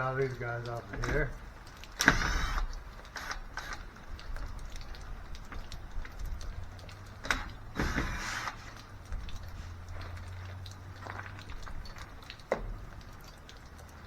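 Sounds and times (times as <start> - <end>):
light clicks of bit and screws: 0.2 - 10.8
cordless drill motor whirring: 2.0 - 3.9, 7.3 - 8.7.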